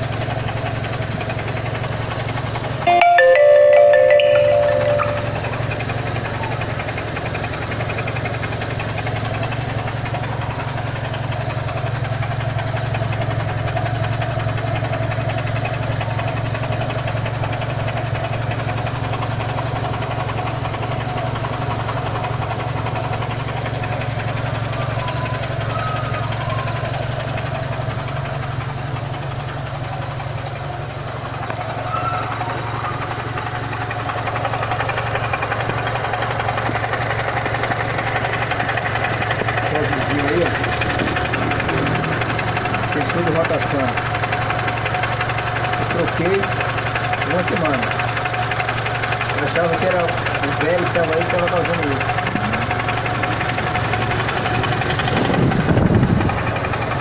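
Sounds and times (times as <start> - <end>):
car engine idling: 0.0 - 2.8, 4.8 - 57.0.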